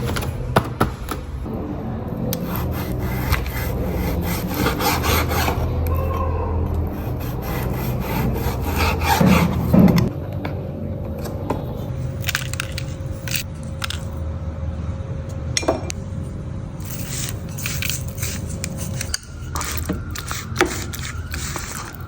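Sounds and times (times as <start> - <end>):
low hum: 0.0 - 22.0
objects scraping and knocking: 11.2 - 14.2, 16.8 - 22.0.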